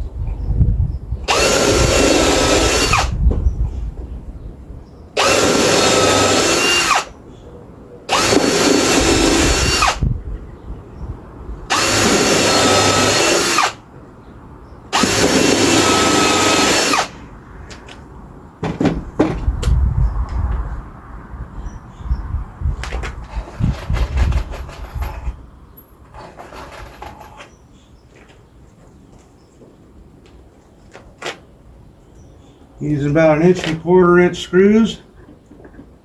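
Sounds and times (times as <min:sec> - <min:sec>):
power drill running: 0:01.3 - 0:03.1, 0:05.2 - 0:07.2, 0:08.1 - 0:10.0, 0:11.7 - 0:13.8, 0:14.9 - 0:17.2.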